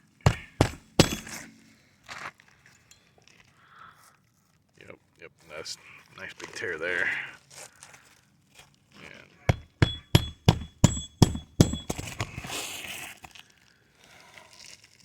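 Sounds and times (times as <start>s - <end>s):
hammer striking metal: 0.3s - 1.6s, 9.5s - 12.4s.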